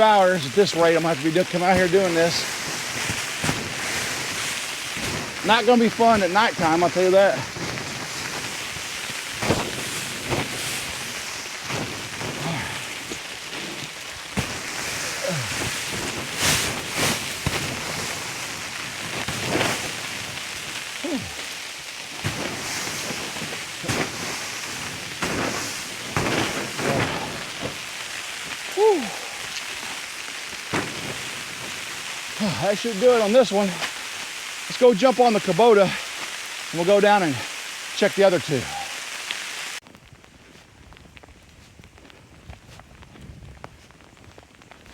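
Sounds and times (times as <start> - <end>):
sleet pattering: 0.0 - 44.9
broom scraping and knocking ice: 0.4 - 27.9.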